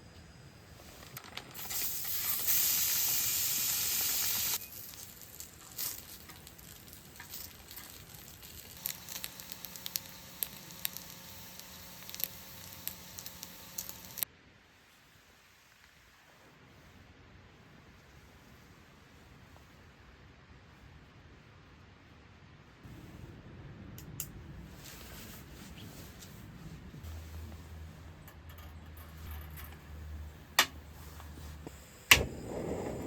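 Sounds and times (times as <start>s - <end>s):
food sizzling in a pan: 1.6s - 14.2s.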